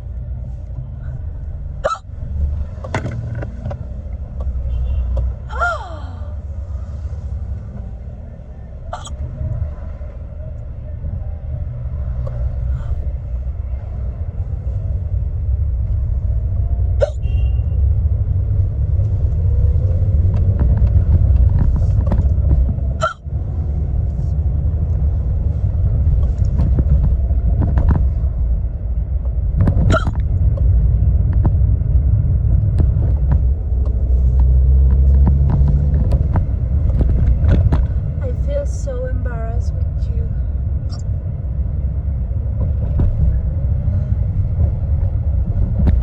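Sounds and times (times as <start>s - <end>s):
car cabin rumble: 0.0s - 46.0s
woman hiccuping: 1.8s - 2.1s, 8.9s - 9.2s, 23.0s - 23.2s.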